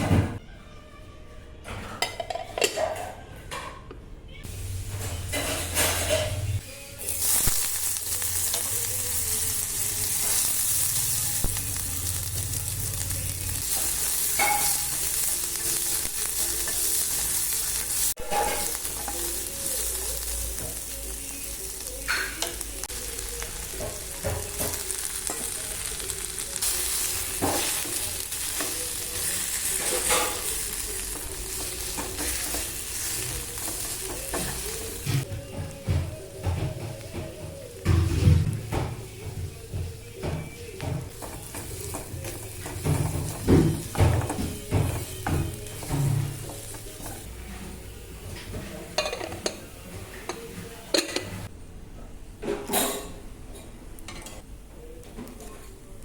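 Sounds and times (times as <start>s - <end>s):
food sizzling in a pan: 4.4s - 51.5s.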